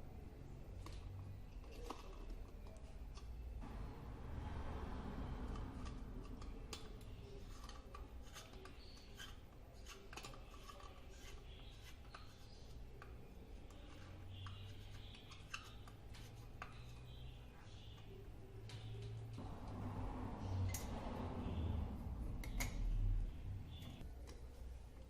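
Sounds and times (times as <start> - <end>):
light rubbing: 5.2 - 24.0
steady low hum: 17.5 - 25.0.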